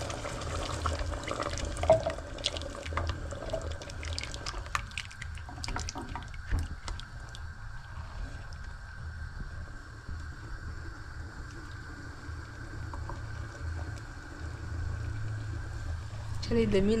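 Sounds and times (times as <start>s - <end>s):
water dripping and trickling: 0.0s - 8.8s
low steady hum: 0.0s - 17.0s.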